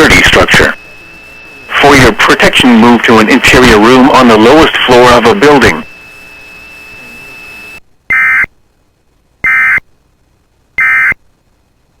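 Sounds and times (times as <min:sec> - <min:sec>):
buzzing digital data tones: 0:00.0 - 0:08.5, 0:09.4 - 0:09.8, 0:10.8 - 0:11.2
thin steady high tone: 0:00.0 - 0:08.5.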